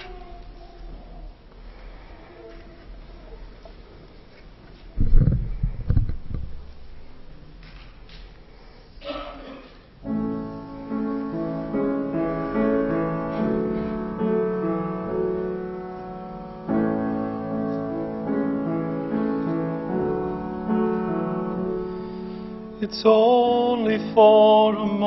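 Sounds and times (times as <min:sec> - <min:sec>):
slow gentle piano: 0:08.5 - 0:25.0.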